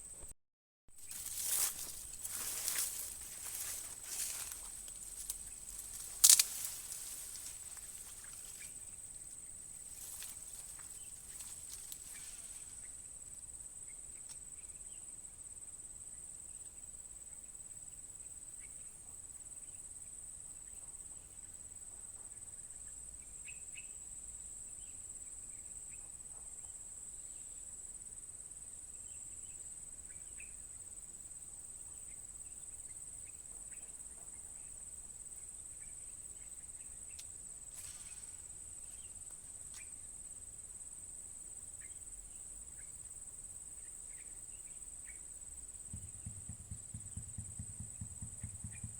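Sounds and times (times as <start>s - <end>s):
rustles: 1.0s - 13.3s, 36.2s - 40.9s
faint chirps: 1.0s - 15.1s
crickets droning: 1.0s - 48.9s
sharp clicks: 4.5s - 7.4s.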